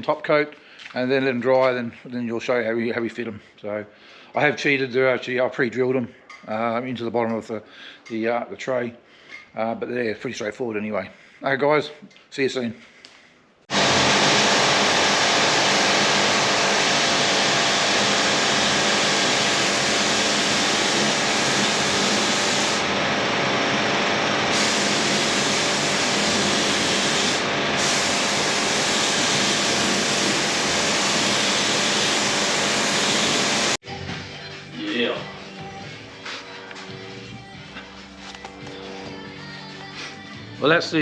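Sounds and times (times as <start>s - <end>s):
paint spray gun hissing: 14.7s - 22.9s, 24.5s - 33.8s.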